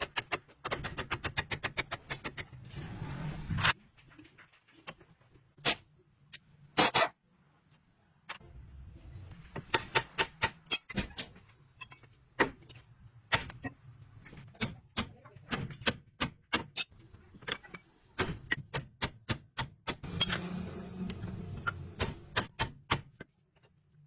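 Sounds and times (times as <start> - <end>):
metal tools knocking and clicking: 9.8 - 12.2.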